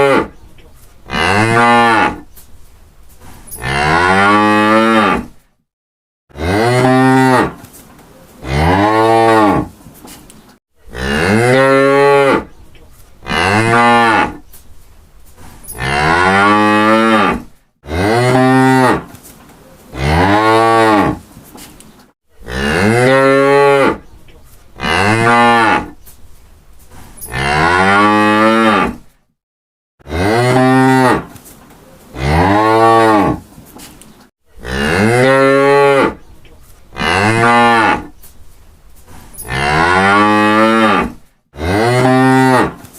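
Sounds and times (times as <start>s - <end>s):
cows mooing: 1.0s - 2.2s, 13.2s - 14.4s, 15.8s - 19.0s, 34.6s - 36.2s, 36.9s - 38.2s, 39.4s - 42.8s.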